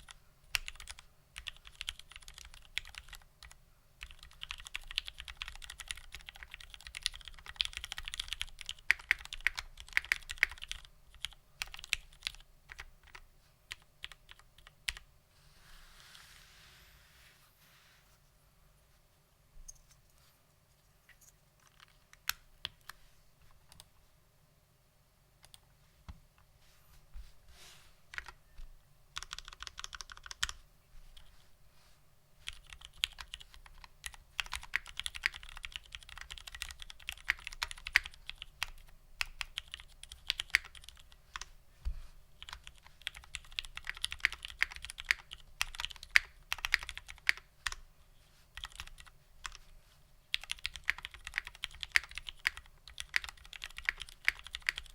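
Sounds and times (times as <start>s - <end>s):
typing on mechanical keyboard: 0.0s - 15.0s, 21.6s - 23.0s, 28.1s - 28.4s, 29.2s - 30.6s, 32.4s - 41.5s, 42.4s - 47.8s, 48.6s - 49.6s, 50.3s - 54.9s.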